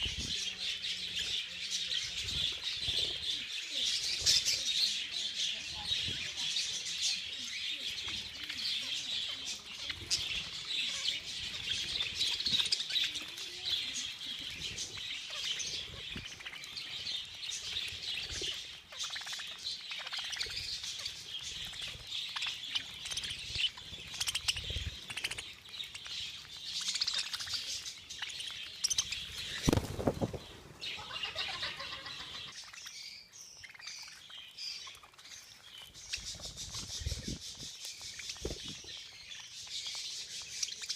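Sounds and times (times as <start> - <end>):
budgerigars chirping: 0.0 - 40.9
wings flapping: 28.9 - 32.3.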